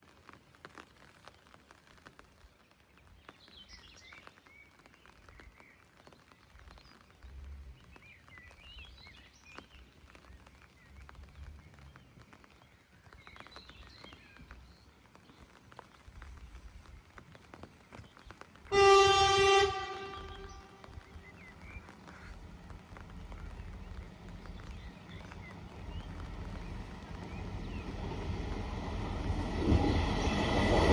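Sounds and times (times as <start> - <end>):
birds chirping: 17.8 - 30.9
train horn: 18.7 - 20.8
faint low rumble: 19.7 - 30.9.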